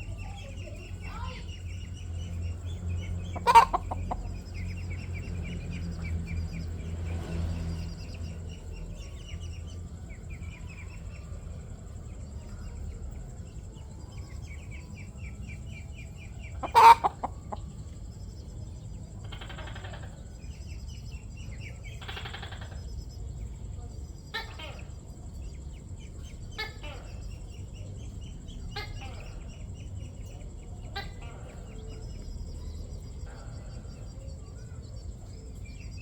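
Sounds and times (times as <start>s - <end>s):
hen clucking: 0.0s - 5.4s, 16.0s - 17.9s
high chirping trills: 0.0s - 36.0s.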